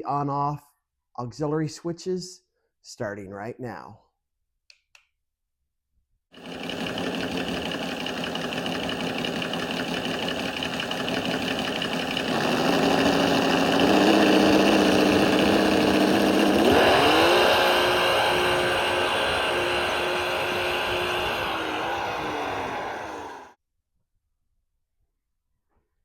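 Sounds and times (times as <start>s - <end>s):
engine running and revving: 6.4s - 23.6s.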